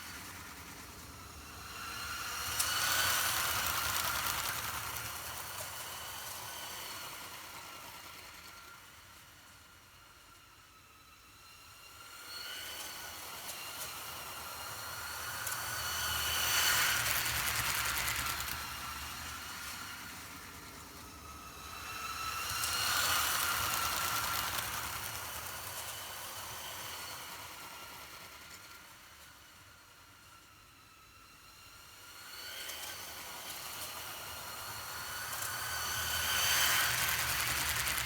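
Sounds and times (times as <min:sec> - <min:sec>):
toy train motor whine: 0:01.7 - 0:08.2, 0:12.9 - 0:20.4, 0:21.4 - 0:28.8, 0:32.7 - 0:38.0
wheels rumbling on plastic track: 0:02.0 - 0:08.6, 0:15.4 - 0:29.0, 0:34.7 - 0:38.0.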